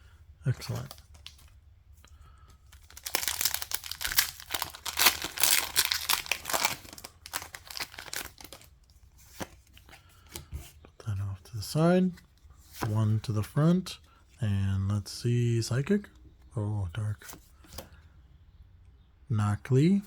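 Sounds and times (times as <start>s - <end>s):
foil wrapper crinkling and tearing: 2.7s - 8.7s.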